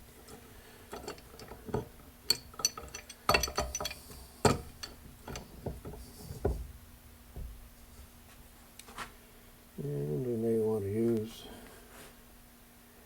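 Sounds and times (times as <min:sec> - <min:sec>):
metallic clinks of hand tool: 0:00.9 - 0:06.1.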